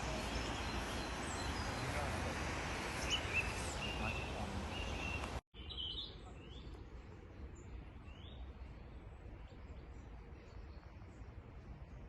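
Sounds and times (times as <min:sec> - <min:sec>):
bird chirps: 0:03.0 - 0:06.8.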